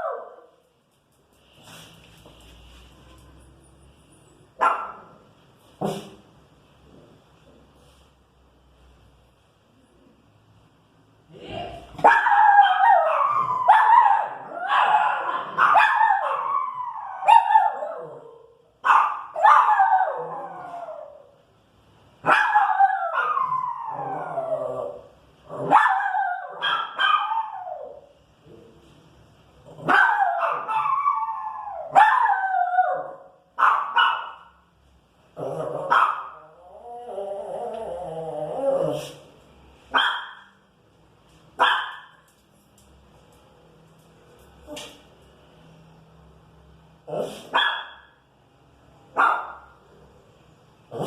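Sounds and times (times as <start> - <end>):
dog barking and howling: 12.0 - 21.3, 22.3 - 28.1, 29.8 - 34.4.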